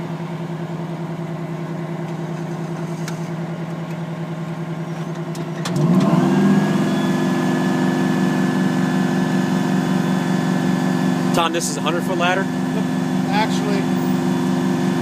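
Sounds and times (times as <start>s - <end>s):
truck engine running: 0.0s - 15.0s
hydraulic whine: 4.8s - 15.0s.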